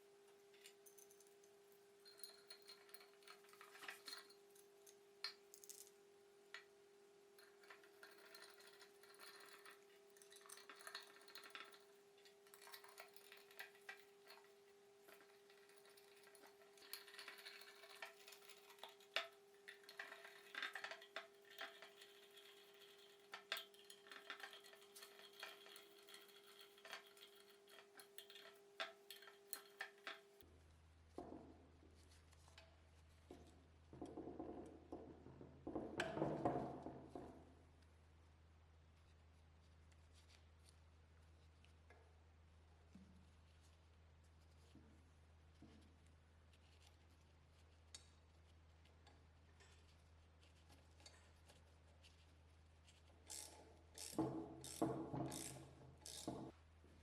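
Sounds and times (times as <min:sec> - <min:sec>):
small metal parts clinking: 0:00.6 - 0:06.0, 0:07.4 - 0:30.4, 0:53.3 - 0:56.5.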